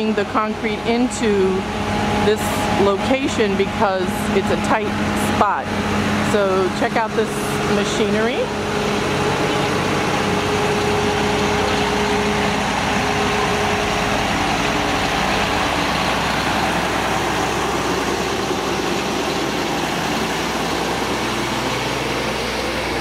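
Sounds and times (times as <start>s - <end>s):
diesel engine idling: 0.0s - 23.0s.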